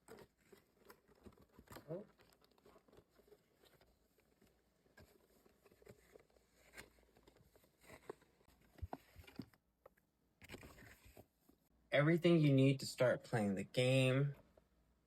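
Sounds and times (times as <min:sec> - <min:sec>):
cardboard packaging rustling: 0:00.0 - 0:09.6, 0:10.4 - 0:11.4.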